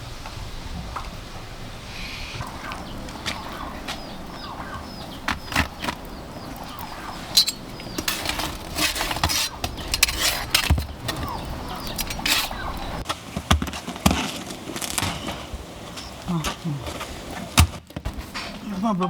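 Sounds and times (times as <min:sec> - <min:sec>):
bird chirping: 0:00.1 - 0:13.0.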